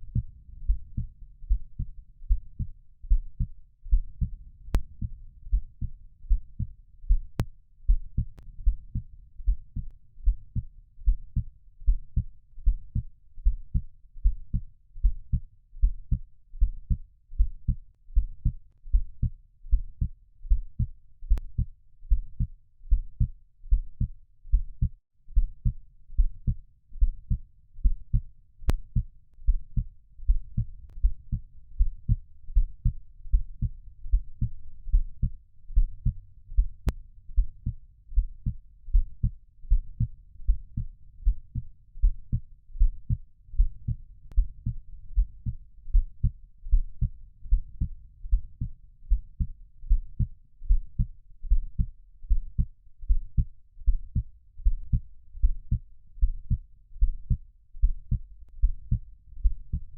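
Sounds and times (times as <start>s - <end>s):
heartbeat thumps: 0.0s - 59.9s.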